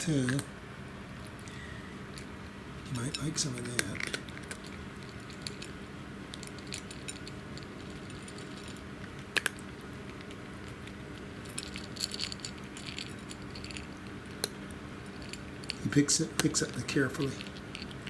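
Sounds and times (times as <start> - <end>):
dry pet food clicking in dish: 3.1 - 4.8, 9.1 - 11.0.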